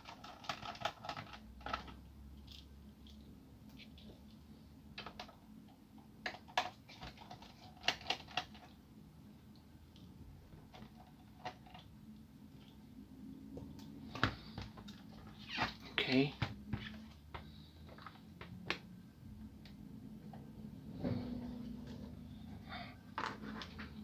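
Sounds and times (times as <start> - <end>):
faint clicks of small parts: 0.0 - 8.8
low room hum: 0.0 - 24.0.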